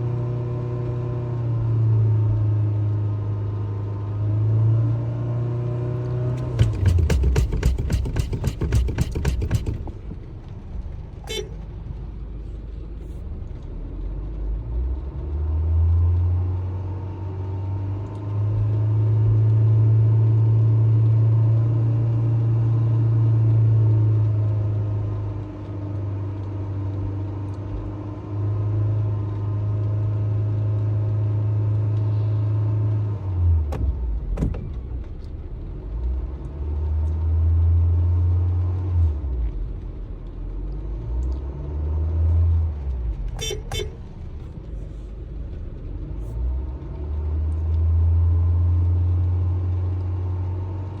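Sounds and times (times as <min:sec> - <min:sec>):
car engine revving: 0:06.3 - 0:10.2.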